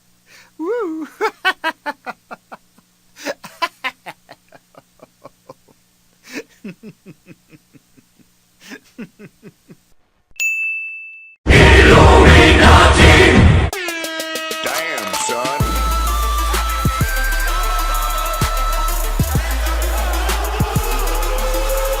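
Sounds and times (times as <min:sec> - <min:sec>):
person laughing in bursts: 0:00.6 - 0:10.0
bright ding: 0:10.4 - 0:11.4
loud music with air horns: 0:11.5 - 0:22.0.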